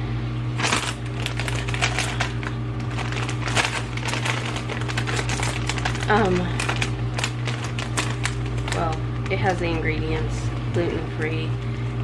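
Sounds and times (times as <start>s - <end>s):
low hum: 0.0s - 12.0s
chip bag crinkling: 0.6s - 10.1s.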